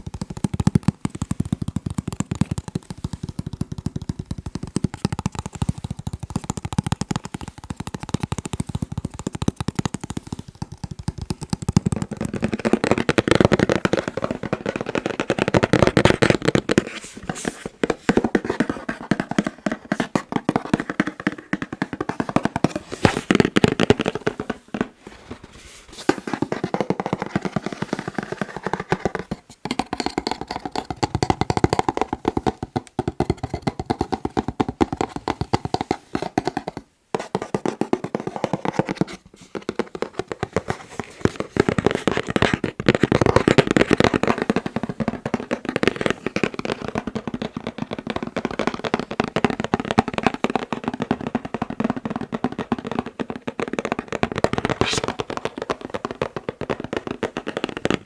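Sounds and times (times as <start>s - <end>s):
fingers tapping on a box: 0.0s - 17.0s, 17.7s - 25.0s, 26.1s - 58.0s.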